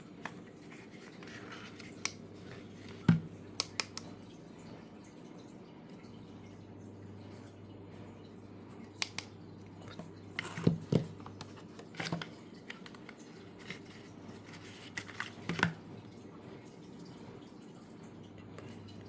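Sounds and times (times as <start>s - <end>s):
low steady hum: 0.0s - 19.0s
hands handling packaging: 11.4s - 15.8s.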